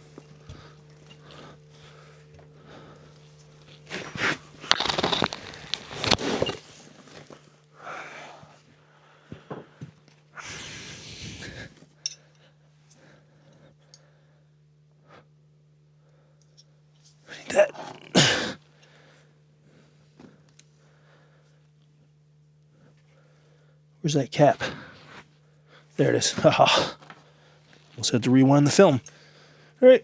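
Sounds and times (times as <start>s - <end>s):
steady low hum: 0.0s - 9.9s, 13.0s - 30.0s
parts and tools rustling and scraping: 3.3s - 7.4s.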